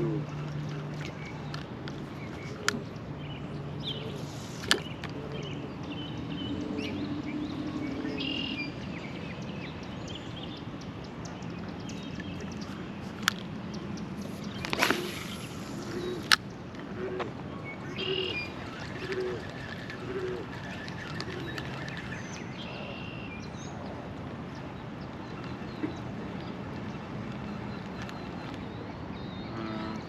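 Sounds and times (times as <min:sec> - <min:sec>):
bullfrog droning call: 0:29.5 - 0:30.0.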